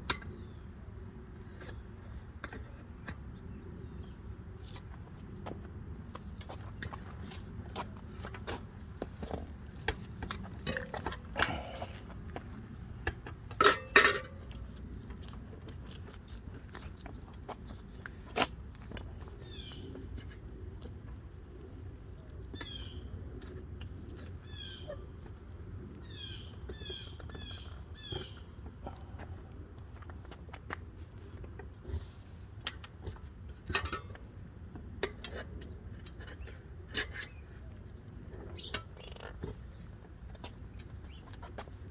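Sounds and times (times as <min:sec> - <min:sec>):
tire spoons knocking against wheel: 0:09.2 - 0:15.2, 0:32.6 - 0:34.4.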